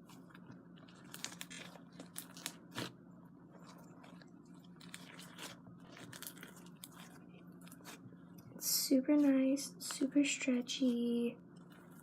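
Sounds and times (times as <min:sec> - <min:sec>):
slime being squished: 0:00.0 - 0:03.0, 0:03.6 - 0:08.0.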